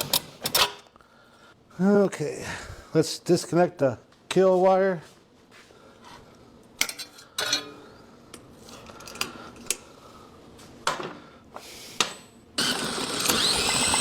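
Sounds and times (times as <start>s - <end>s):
engine whirring on recoil starter: 12.6s - 14.0s.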